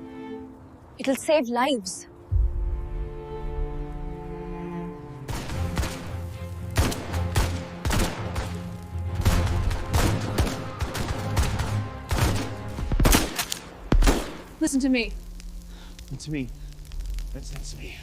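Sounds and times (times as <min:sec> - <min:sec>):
dark music with low tones: 0:02.3 - 0:18.0
gunshots: 0:06.8 - 0:08.6, 0:09.2 - 0:14.5.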